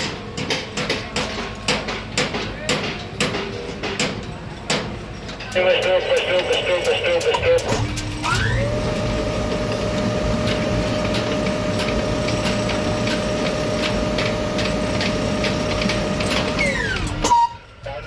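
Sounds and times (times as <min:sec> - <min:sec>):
crane motor whining: 0:06.3 - 0:17.6.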